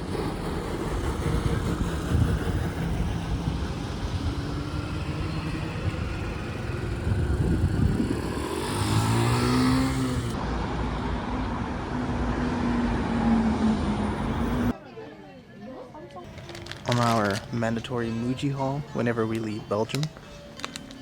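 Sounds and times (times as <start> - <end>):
vehicle passing close: 0.0 - 14.7
road traffic: 0.0 - 14.8, 16.3 - 21.0.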